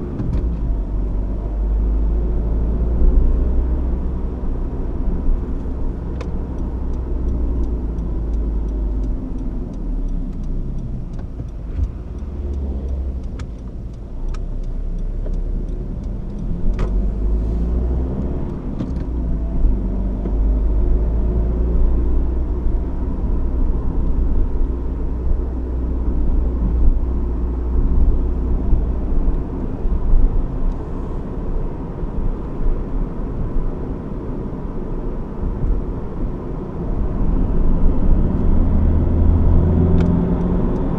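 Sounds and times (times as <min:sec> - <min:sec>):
low road rumble: 0:00.0 - 0:40.9
sharp clicks: 0:05.5 - 0:17.3.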